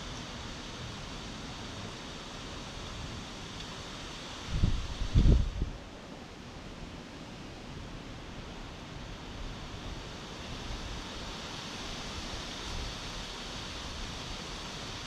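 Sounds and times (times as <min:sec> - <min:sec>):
wind blowing: 0:04.5 - 0:05.8
wind buffeting microphone: 0:04.5 - 0:05.8.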